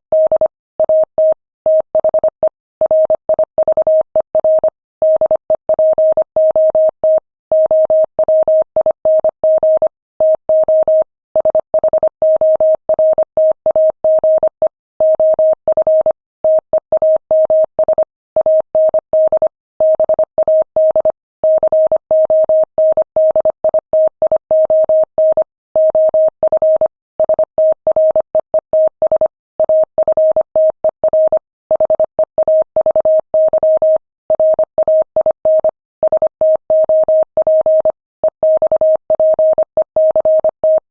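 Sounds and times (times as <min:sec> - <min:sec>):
morse code beeps: 0:00.1 - 0:40.8.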